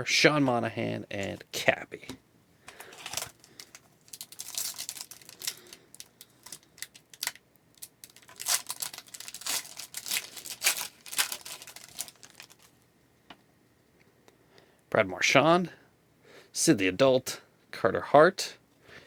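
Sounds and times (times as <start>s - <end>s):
plastic wrapper crinkling: 2.7s - 12.8s.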